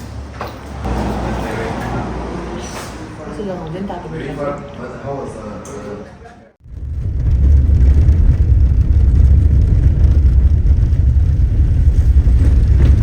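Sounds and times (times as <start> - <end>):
car road and engine rumble: 0.2 - 3.3, 6.6 - 13.0.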